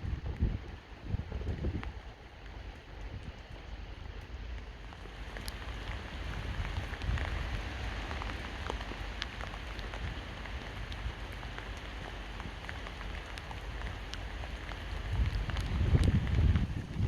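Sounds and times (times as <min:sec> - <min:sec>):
rain on hard surfaces: 0:00.0 - 0:17.0.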